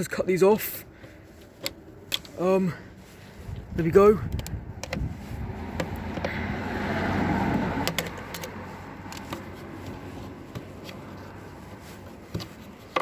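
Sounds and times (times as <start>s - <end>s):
sharp plastic clicks: 4.2s - 5.0s, 7.5s - 9.5s.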